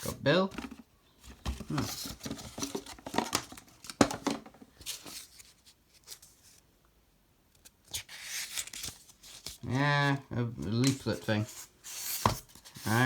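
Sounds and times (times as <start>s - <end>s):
cardboard and paper rustling: 0.0s - 6.6s, 7.9s - 9.6s, 10.7s - 13.0s.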